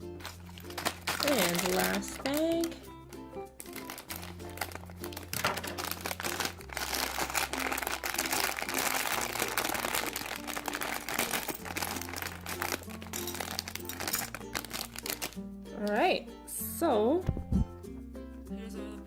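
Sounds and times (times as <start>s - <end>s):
background music: 0.0s - 19.0s
plastic bag crinkling: 0.1s - 15.4s.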